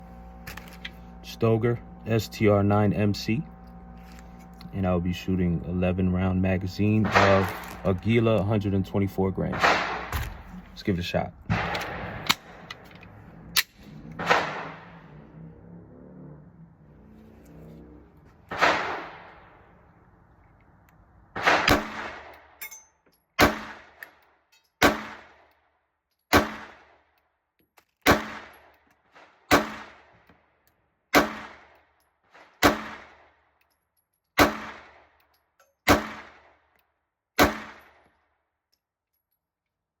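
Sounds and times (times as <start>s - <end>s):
pistol shots with echo: 7.0s - 7.6s, 9.5s - 10.4s, 11.5s - 12.7s, 13.6s - 14.9s, 18.5s - 19.4s, 21.4s - 22.4s, 23.4s - 24.0s, 24.8s - 25.4s, 26.3s - 27.0s, 28.0s - 28.6s, 29.5s - 30.1s, 31.1s - 31.8s, 32.6s - 33.3s, 34.4s - 35.1s, 35.9s - 36.5s, 37.4s - 38.0s.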